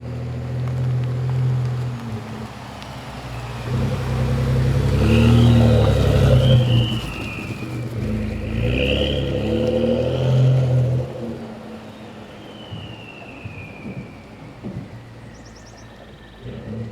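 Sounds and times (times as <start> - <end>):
engine revving: 0.0 - 12.0, 15.2 - 16.9
turbo whistle: 2.9 - 9.4, 11.7 - 16.4.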